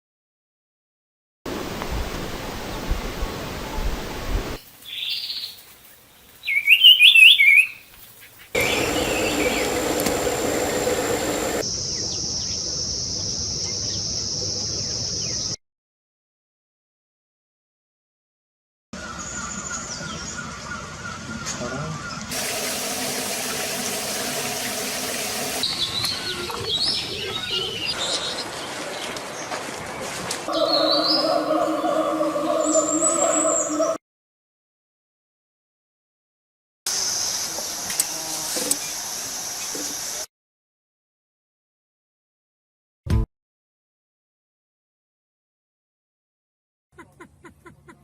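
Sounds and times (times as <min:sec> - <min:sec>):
small birds chirping: 0:04.8 - 0:12.6
bird warbling chirps: 0:06.5 - 0:07.8, 0:30.5 - 0:34.0
low hum: 0:08.6 - 0:11.6
steady rushing noise: 0:08.6 - 0:11.6.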